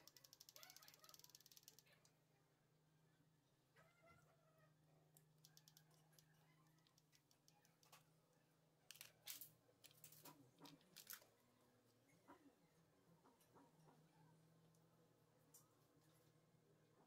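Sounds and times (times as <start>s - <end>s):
faint clicks and scrapes: 0.0s - 2.2s, 5.1s - 8.2s, 8.9s - 17.0s.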